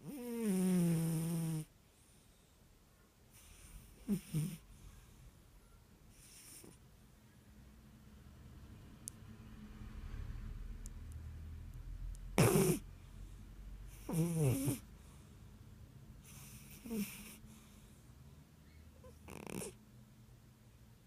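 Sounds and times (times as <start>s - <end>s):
cat snoring: 0.0s - 1.7s, 3.3s - 4.9s, 6.1s - 6.8s, 12.4s - 13.0s, 13.9s - 15.3s, 16.2s - 18.0s, 19.0s - 19.8s.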